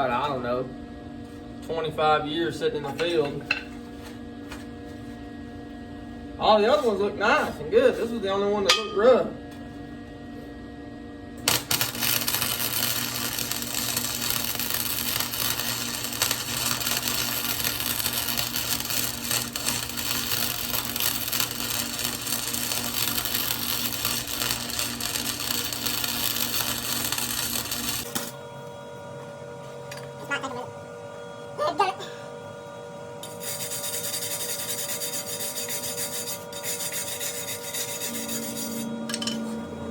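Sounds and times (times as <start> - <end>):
low steady hum: 0.0 - 33.7, 35.5 - 39.9
arc welder crackling: 11.4 - 28.4.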